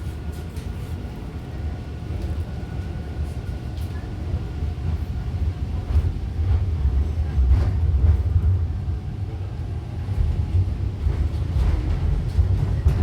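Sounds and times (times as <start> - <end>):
subway train rumble: 0.0 - 13.0.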